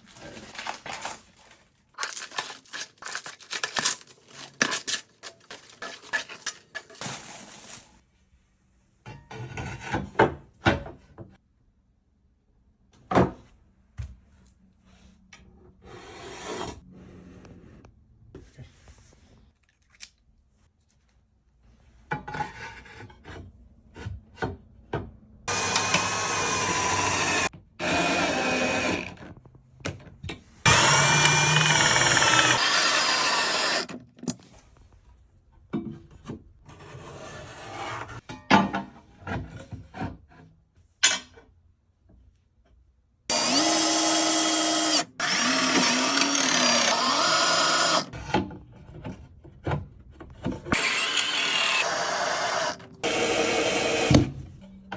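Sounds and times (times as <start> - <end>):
power drill running: 25.5 - 29.1, 30.7 - 34.0, 43.3 - 48.1, 50.8 - 54.3.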